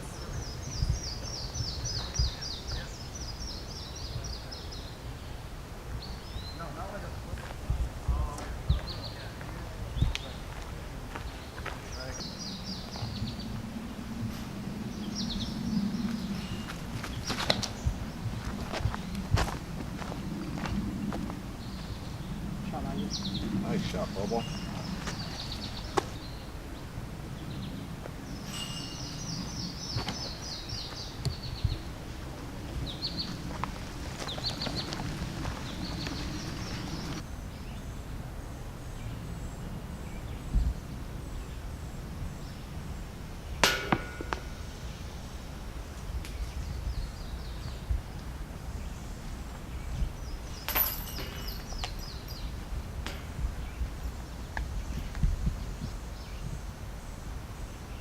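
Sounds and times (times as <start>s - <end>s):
birds chirping: 0.0s - 58.0s
low wind rumble: 0.0s - 58.0s
sharp knocks with ring: 43.6s - 44.6s.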